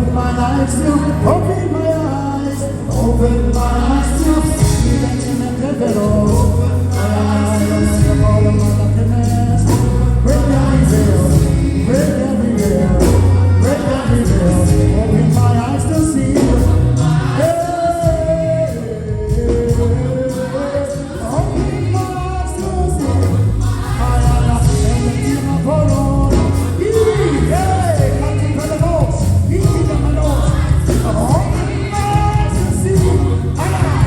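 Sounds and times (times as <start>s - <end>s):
band playing bass and drums: 0.0s - 34.0s
person singing: 0.0s - 34.0s.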